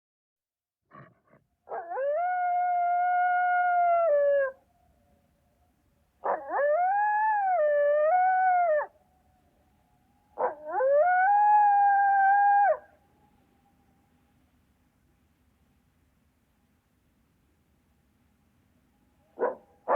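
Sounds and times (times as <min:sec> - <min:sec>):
coyote howling: 0:01.7 - 0:04.6, 0:06.2 - 0:09.0, 0:10.4 - 0:12.9.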